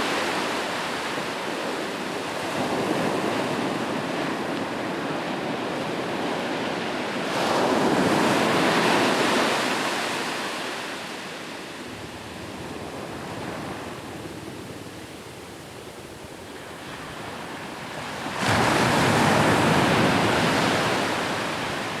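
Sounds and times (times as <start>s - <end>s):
ocean waves breaking on shore: 0.0s - 22.0s.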